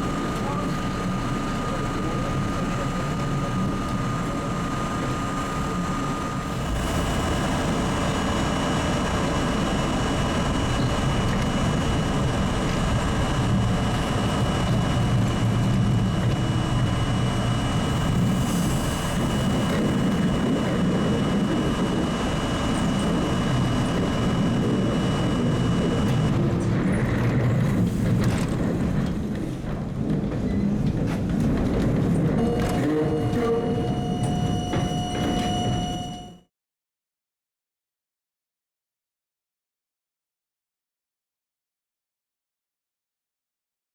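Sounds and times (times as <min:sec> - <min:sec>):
faint steady whine: 0:00.0 - 0:26.5, 0:32.4 - 0:36.5
subway train rumbling: 0:00.0 - 0:36.4.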